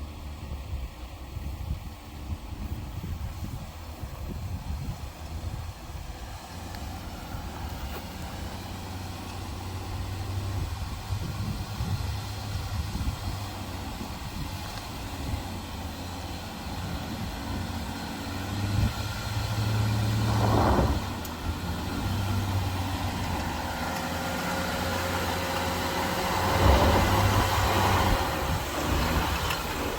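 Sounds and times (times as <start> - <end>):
vehicle engine droning: 0.0 - 29.9.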